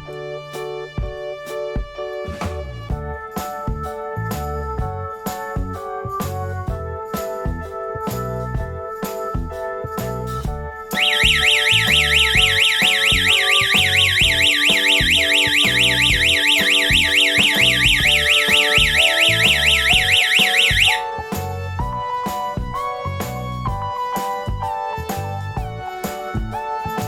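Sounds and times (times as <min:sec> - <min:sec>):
background music: 0:00.0 - 0:27.0
warbling security alarm siren: 0:11.0 - 0:21.1.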